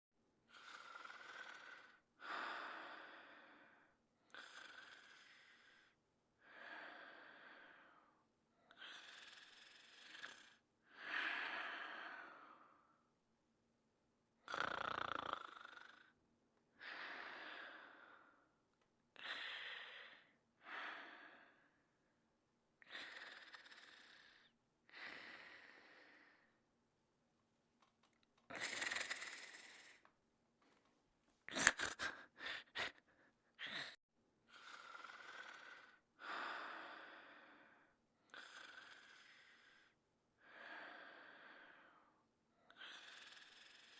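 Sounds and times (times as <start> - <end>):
cartoon character snoring: 0.5 - 2.0, 4.3 - 6.0, 8.7 - 11.1, 14.4 - 16.2, 22.8 - 24.5, 28.5 - 30.0, 33.6 - 36.0, 38.2 - 40.0, 42.7 - 43.9.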